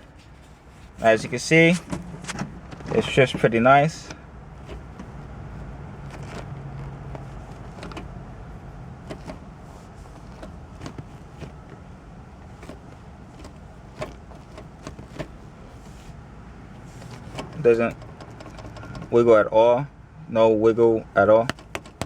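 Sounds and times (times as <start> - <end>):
gear lever clicks and clunks: 1.0 - 19.4, 21.2 - 22.0.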